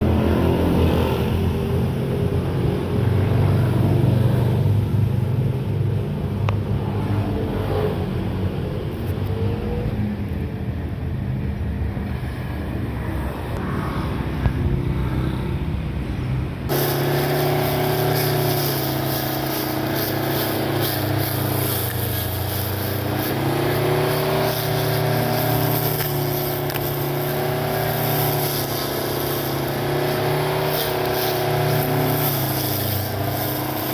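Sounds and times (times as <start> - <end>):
electric motor humming: 16.7 - 33.9.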